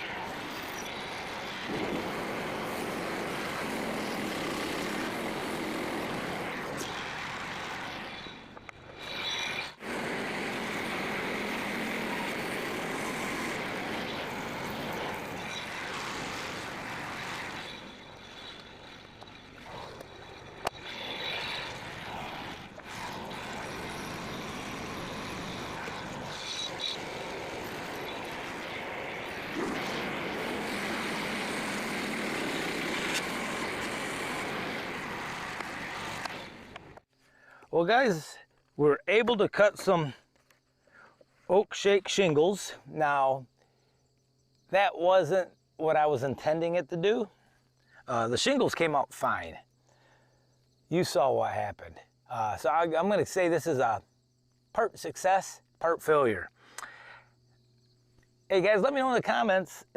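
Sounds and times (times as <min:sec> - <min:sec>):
band sawmill cutting wood: 0:00.0 - 0:37.0.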